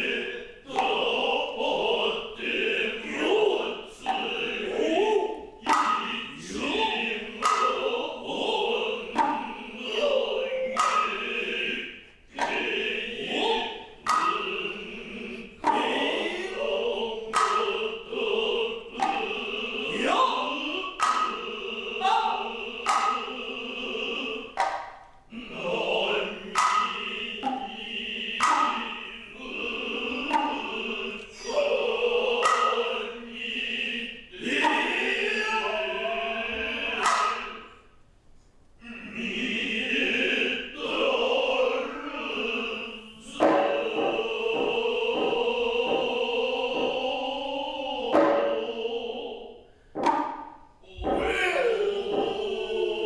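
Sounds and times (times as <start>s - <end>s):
voices chanting: 0.0s - 38.0s, 38.8s - 53.0s
sharp hand drum strikes: 17.2s - 23.4s, 24.4s - 25.2s, 26.5s - 31.2s.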